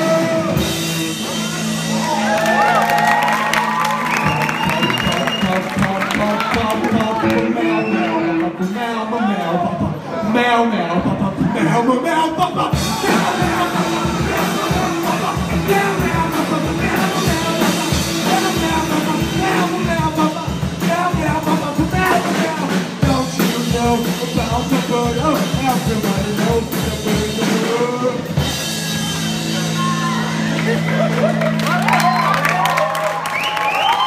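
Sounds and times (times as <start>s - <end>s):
person singing: 0.0s - 2.2s, 5.1s - 29.0s
drums: 0.0s - 34.0s
rock band playing: 0.0s - 34.0s.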